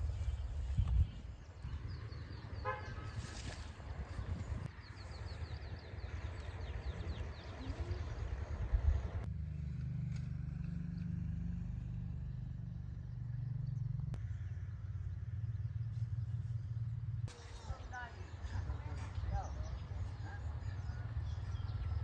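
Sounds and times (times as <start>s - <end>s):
horn toot: 2.6s - 3.2s
motor vehicle engine running: 4.3s - 22.0s.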